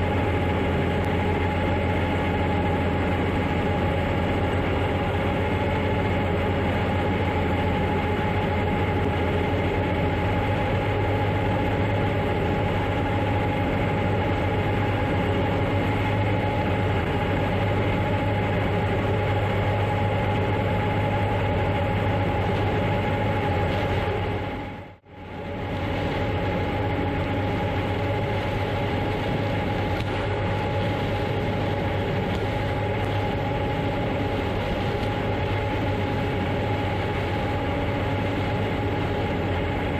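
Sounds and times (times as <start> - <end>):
deep engine drone: 0.0 - 39.9
machinery whine: 0.0 - 39.9.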